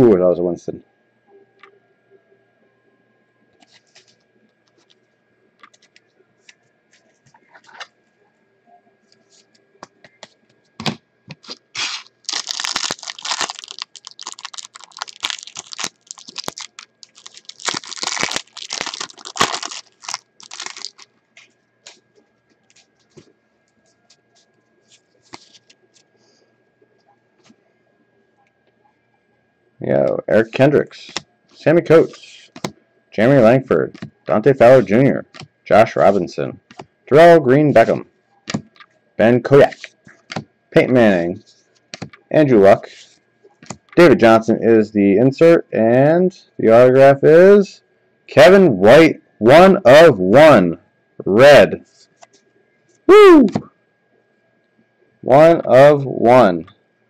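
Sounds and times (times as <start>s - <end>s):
wrapper tearing and crinkling: 11.4s - 21.1s.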